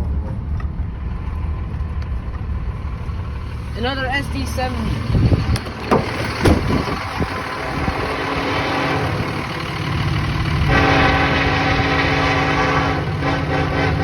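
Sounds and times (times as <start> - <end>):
diesel locomotive engine drone: 0.0 - 14.0
locomotive air horn blast: 7.2 - 14.0.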